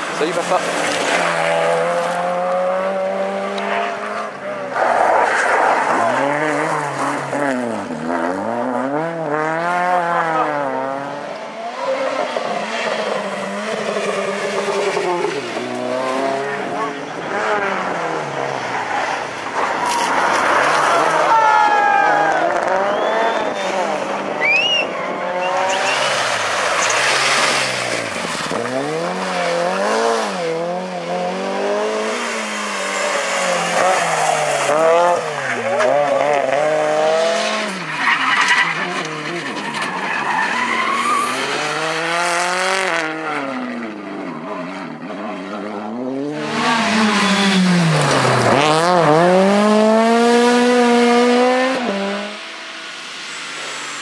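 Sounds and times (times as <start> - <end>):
rally car engines revving: 0.0 - 54.0
tyre squeal: 24.4 - 27.3, 37.8 - 41.6.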